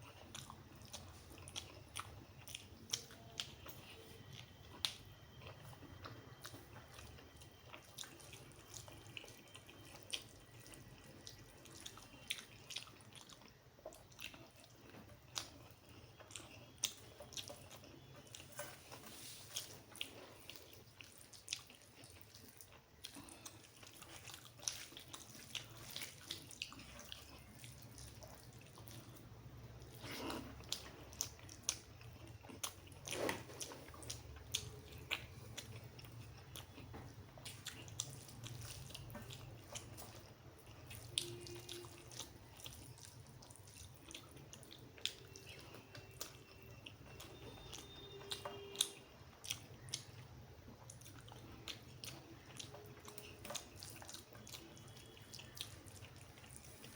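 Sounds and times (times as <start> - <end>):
wet chewing: 0.0 - 56.9.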